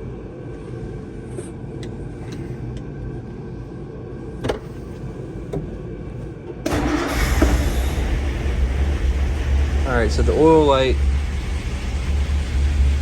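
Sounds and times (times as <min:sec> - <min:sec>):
car engine starting and running: 0:06.6 - 0:13.0.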